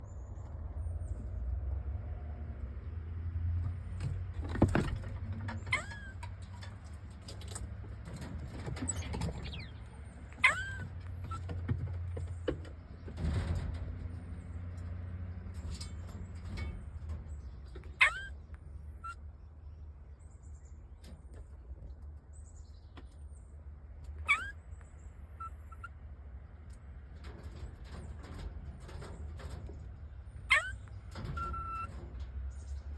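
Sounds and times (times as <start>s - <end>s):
squirrel call rising and falling: 5.7s - 6.2s, 10.4s - 10.8s, 18.0s - 18.4s, 24.3s - 24.6s, 30.5s - 31.9s
squirrel chirping: 8.9s - 11.4s, 17.9s - 18.4s, 24.2s - 25.9s, 30.5s - 31.9s.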